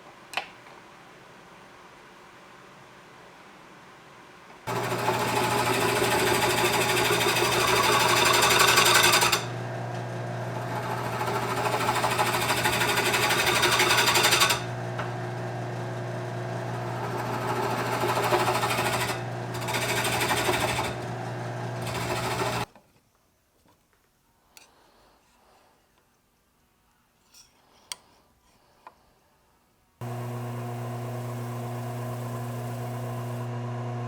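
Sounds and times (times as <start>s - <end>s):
tool rasping on spinning wood: 4.7s - 22.7s
wood lathe motor hum: 4.7s - 22.7s, 30.0s - 34.0s.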